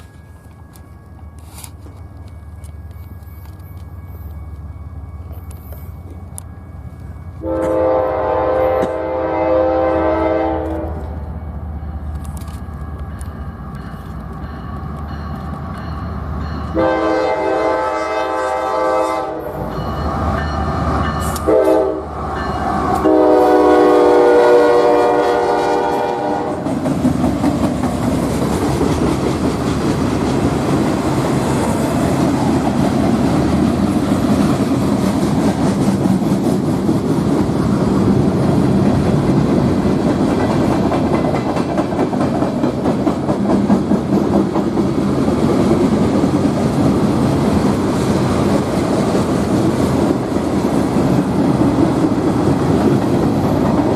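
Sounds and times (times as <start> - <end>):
train horn blasts: 7.4 - 11.3, 16.7 - 19.7, 21.2 - 22.2, 22.9 - 26.8.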